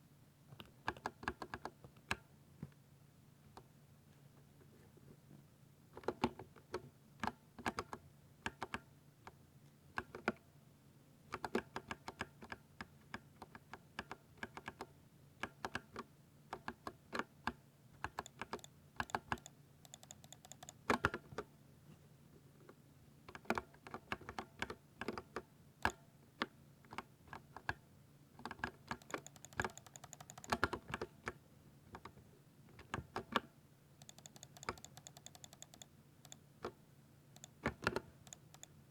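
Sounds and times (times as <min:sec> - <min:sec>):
mechanical keyboard typing: 0:18.0 - 0:21.2, 0:28.4 - 0:31.1, 0:34.0 - 0:36.4, 0:37.4 - 0:38.8.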